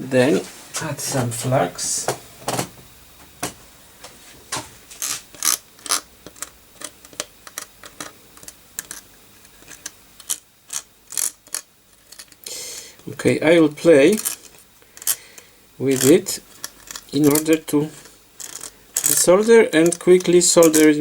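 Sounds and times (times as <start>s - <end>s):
small tools clicking and tapping: 5.0s - 13.4s, 14.1s - 17.8s, 18.4s - 21.0s.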